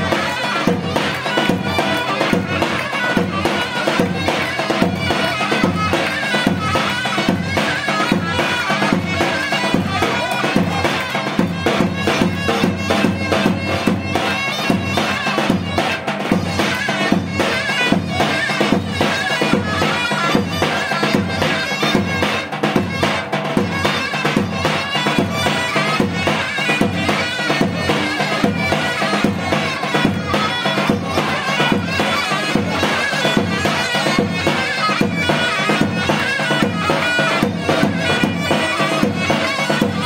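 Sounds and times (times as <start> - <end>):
shrill reed wind instrument: 0.0 - 40.0
steady drum beat: 0.0 - 40.0.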